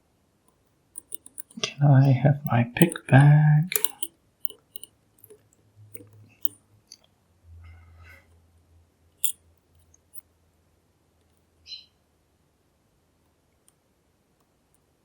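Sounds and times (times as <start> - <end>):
lock-picking tools clicking: 1.0 - 6.6.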